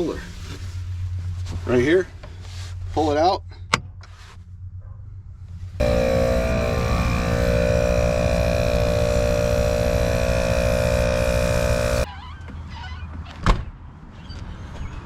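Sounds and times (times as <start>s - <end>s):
truck engine running: 5.8s - 12.0s.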